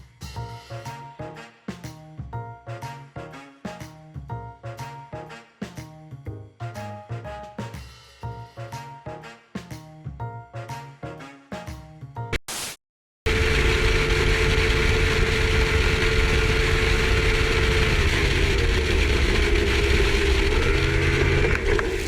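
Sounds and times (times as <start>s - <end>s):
engine rumbling steadily: 13.3s - 22.0s.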